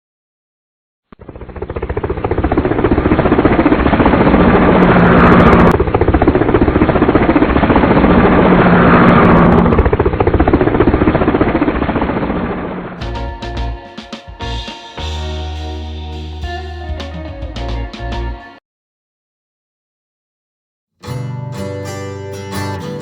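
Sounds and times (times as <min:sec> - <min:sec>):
helicopter rotor blades chopping: 0:01.2 - 0:15.2.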